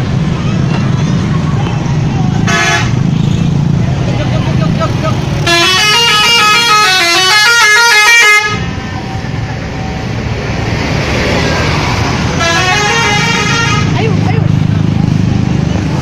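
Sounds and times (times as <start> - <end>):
traffic noise: 0.0 - 16.0
multi-tone air horn melody: 2.4 - 3.0, 5.4 - 8.7, 12.4 - 14.0.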